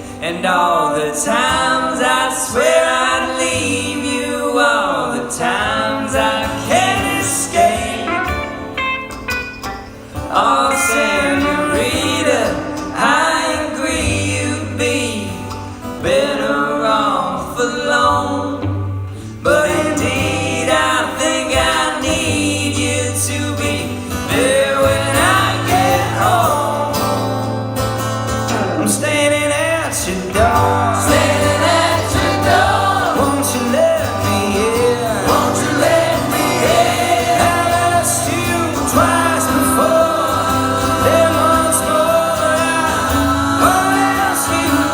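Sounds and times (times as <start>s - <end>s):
guitars: 0.0s - 44.9s
person singing: 10.2s - 15.3s, 28.5s - 44.9s.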